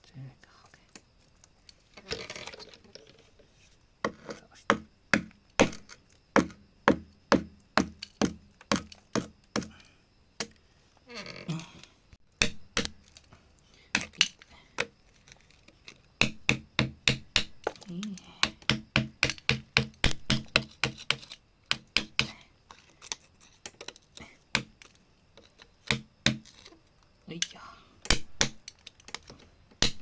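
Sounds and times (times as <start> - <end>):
hammer striking rock: 4.0 - 5.8, 6.4 - 9.7, 12.4 - 13.0, 16.2 - 17.8, 18.4 - 22.4, 25.8 - 26.5, 28.0 - 28.6, 29.8 - 30.0.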